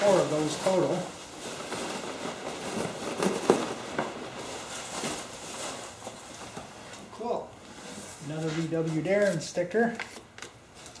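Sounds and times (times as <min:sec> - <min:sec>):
packing peanuts rustling: 0:00.0 - 0:06.2.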